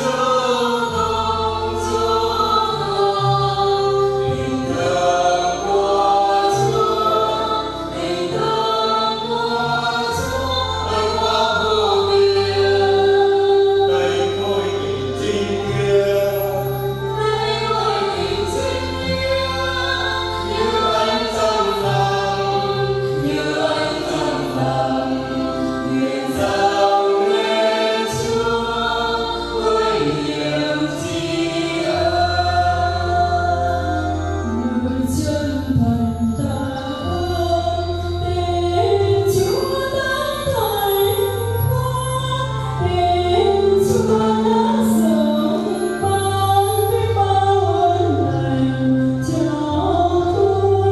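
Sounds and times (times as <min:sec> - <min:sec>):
choir singing a hymn: 0:00.0 - 0:50.9
sustained instrumental bass notes: 0:00.0 - 0:50.9.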